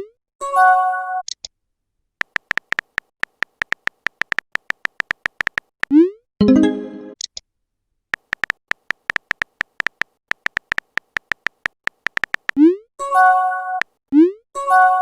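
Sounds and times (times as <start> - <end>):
rapid typing clicks: 2.2 - 5.8, 8.2 - 12.6
notification chime: 6.4 - 7.2.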